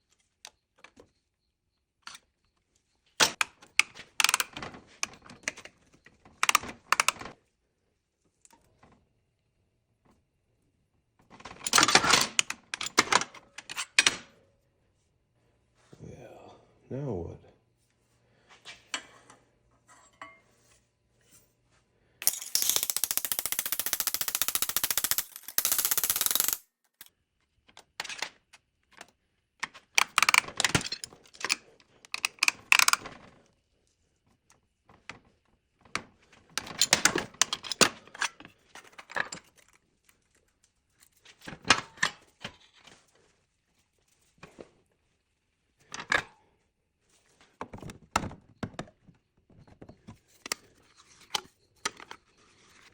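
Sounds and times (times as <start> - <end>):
metallic clinks and clatters: 22.2 - 26.6
rapid-fire rattling tool: 22.2 - 26.6.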